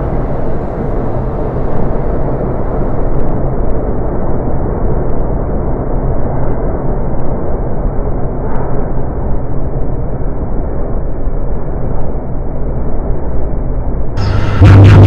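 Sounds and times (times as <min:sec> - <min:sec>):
loud steady low noise: 0:00.0 - 0:06.1, 0:09.0 - 0:15.0.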